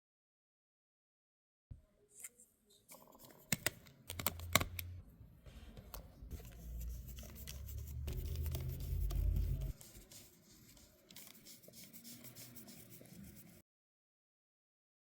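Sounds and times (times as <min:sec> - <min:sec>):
low rumble: 0:04.8 - 0:09.8.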